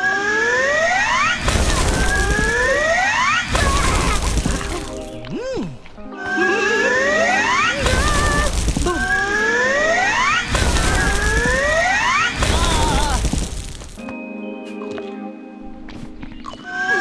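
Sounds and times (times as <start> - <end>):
cartoon whistle swoops: 0.0 - 4.9, 6.3 - 13.2
loud crashes: 0.7 - 5.2, 6.9 - 14.0
music: 3.5 - 13.3, 14.0 - 17.0.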